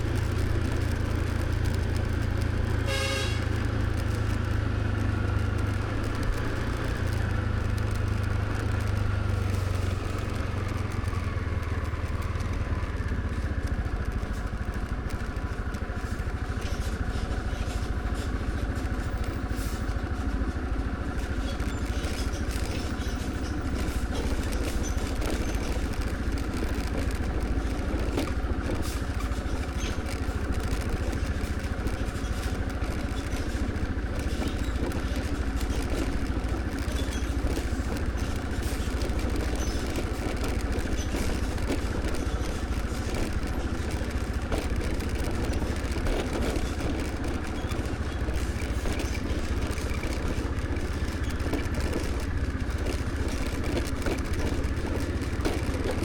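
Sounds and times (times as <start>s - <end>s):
motor scooter engine: 0.0s - 56.0s
road and wind rumble: 0.0s - 56.0s
scooter horn toot: 2.8s - 3.8s.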